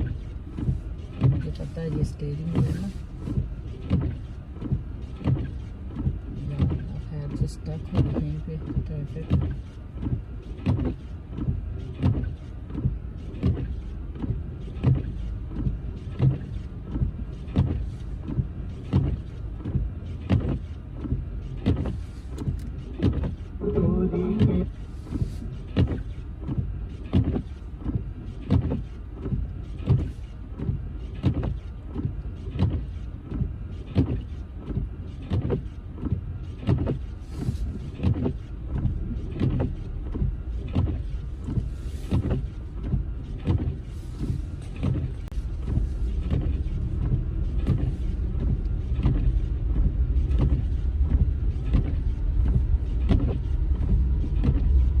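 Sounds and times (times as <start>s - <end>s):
road and engine rumble: 0.0s - 55.0s
windshield wipers sweeping: 0.0s - 55.0s
short hum-like tone: 23.6s - 24.7s.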